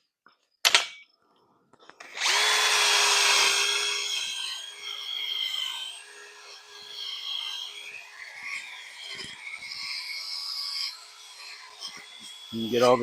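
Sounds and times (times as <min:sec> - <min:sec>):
electric drill motor whine: 0:02.0 - 0:13.0
wire brush scratching metal: 0:04.1 - 0:13.0.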